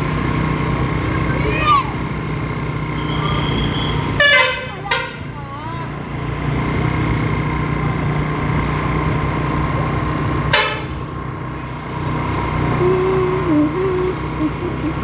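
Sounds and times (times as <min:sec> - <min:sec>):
bus engine running: 0:00.0 - 0:15.0
bus horn steady tone: 0:02.9 - 0:05.5, 0:10.4 - 0:11.2.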